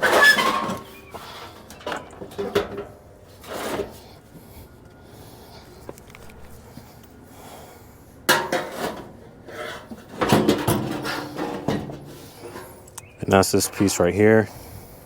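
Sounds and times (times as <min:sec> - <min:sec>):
hand tools clanking on metal: 0:00.0 - 0:04.0, 0:08.3 - 0:14.0.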